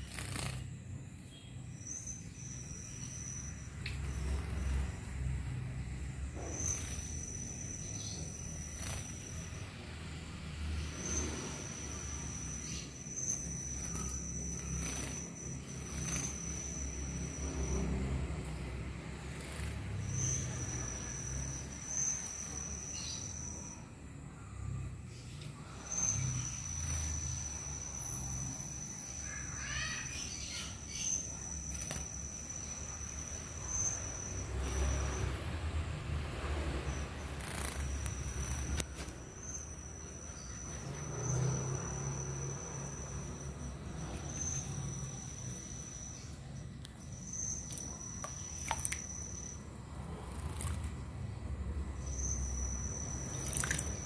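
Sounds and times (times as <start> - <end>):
steady high-pitched tone: 0.0 - 24.8
high insect-like trill: 0.0 - 54.0
sunbird rising chirps: 0.0 - 54.0.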